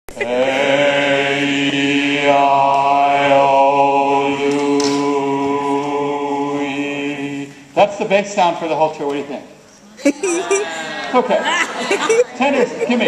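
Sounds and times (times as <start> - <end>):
choir bass section holding low note: 0.1 - 7.5.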